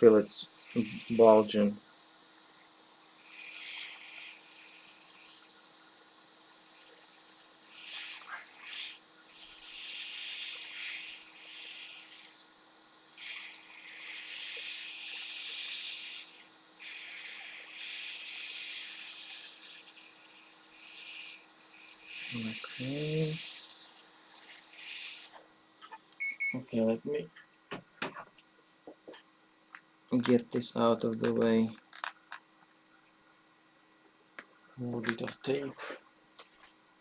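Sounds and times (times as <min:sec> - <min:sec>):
hot air station hissing: 0:00.0 - 0:26.9.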